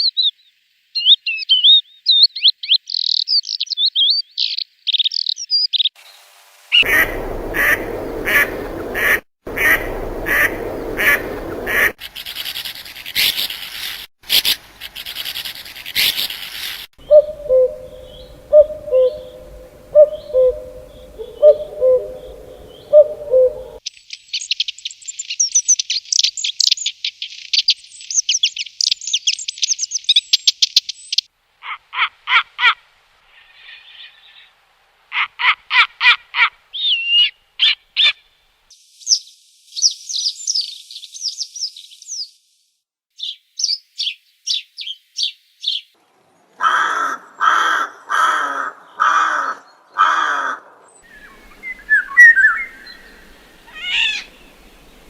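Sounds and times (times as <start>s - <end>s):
rapid high bird trill: 6.7s - 23.8s, 51.0s - 55.0s
low hoots: 6.8s - 12.0s, 17.0s - 23.8s, 48.1s - 55.0s
repeated bird calls: 6.8s - 32.4s, 35.2s - 38.4s, 46.6s - 55.0s
short high bird chirps: 51.0s - 54.6s.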